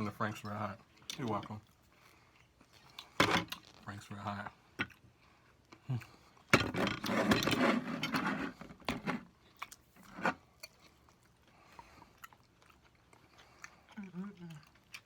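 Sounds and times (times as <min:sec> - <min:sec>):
scraping and rattling: 0:06.6 - 0:09.2.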